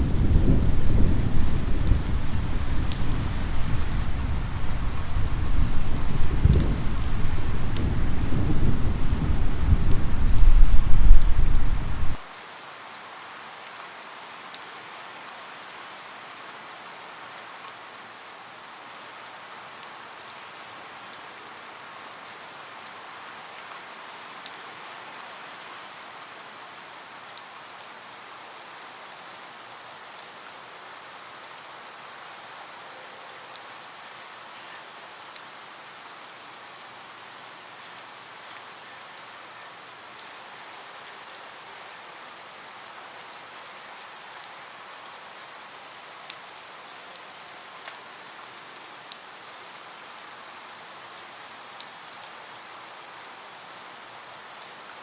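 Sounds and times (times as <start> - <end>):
rumble of thunder: 0.0 - 12.2
steady rain: 0.0 - 55.0
rain drop ticks: 0.4 - 12.4.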